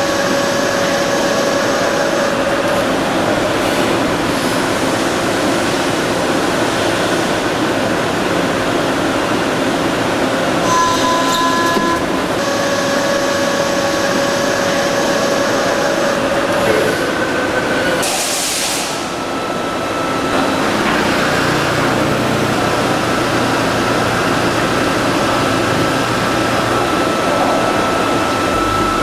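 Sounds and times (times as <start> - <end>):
lathe cutting metal: 10.5 - 29.0
thin machine tones: 10.6 - 16.2.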